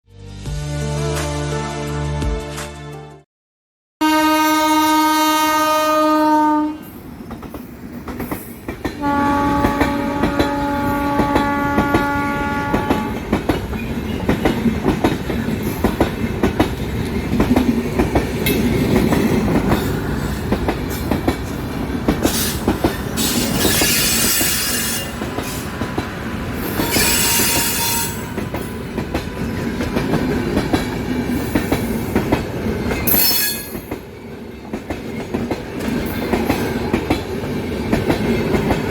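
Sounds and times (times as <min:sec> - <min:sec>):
train horn blasts: 0:04.0 - 0:07.0, 0:09.0 - 0:13.2, 0:26.7 - 0:28.6
train rumbling past: 0:05.2 - 0:38.9.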